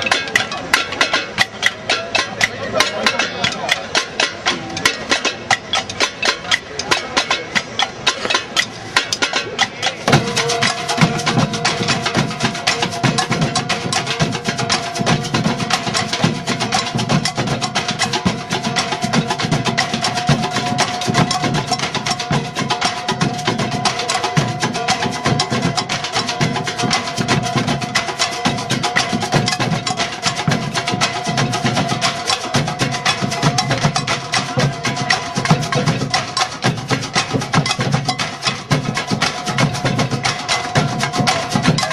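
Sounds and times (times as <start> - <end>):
percussion-led music: 0.0 - 41.9
steady held tone: 9.4 - 15.0.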